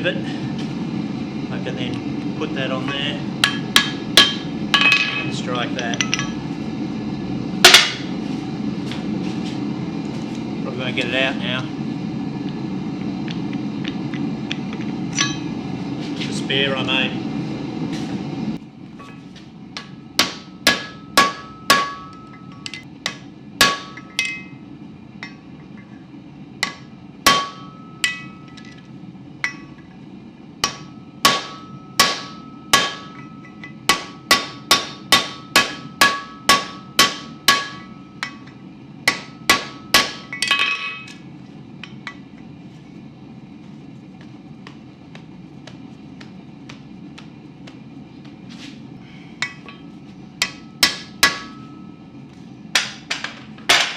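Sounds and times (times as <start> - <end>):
steady low hum: 0.0 - 53.9
hammer striking rivet on anvil: 3.4 - 5.2, 19.8 - 24.4, 26.6 - 28.4, 30.6 - 38.5, 39.1 - 41.1, 50.4 - 51.6, 52.8 - 53.9.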